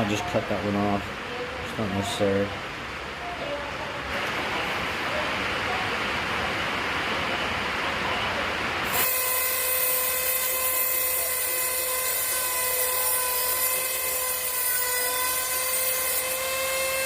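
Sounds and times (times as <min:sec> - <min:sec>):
grinder whining on metal: 0:08.9 - 0:17.0.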